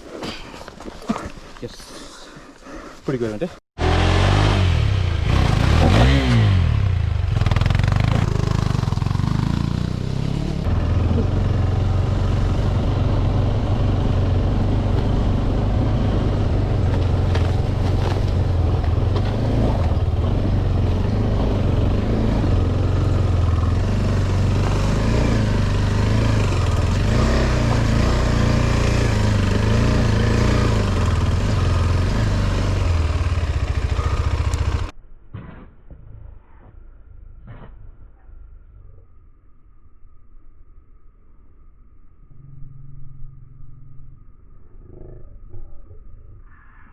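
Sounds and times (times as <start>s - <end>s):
motorcycle engine running: 3.8s - 34.9s.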